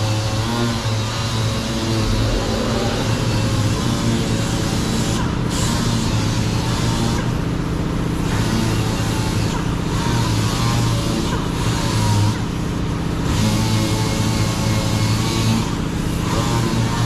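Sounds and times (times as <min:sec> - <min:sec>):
machine humming and hissing: 0:00.0 - 0:14.5.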